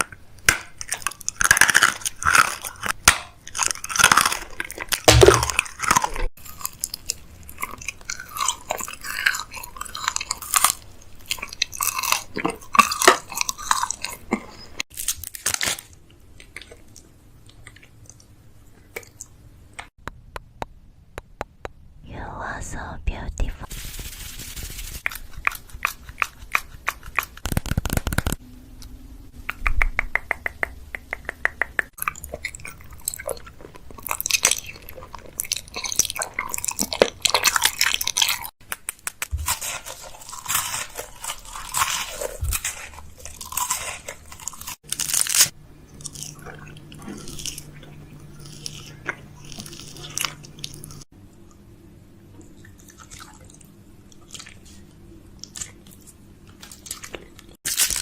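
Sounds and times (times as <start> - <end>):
crisp crunching and crackling: 0.5 - 17.0, 23.7 - 28.4, 32.0 - 51.1, 54.1 - 58.0.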